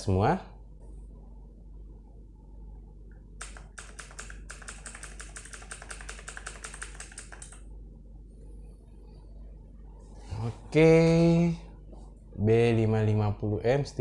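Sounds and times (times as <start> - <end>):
computer keyboard typing: 3.4 - 7.7.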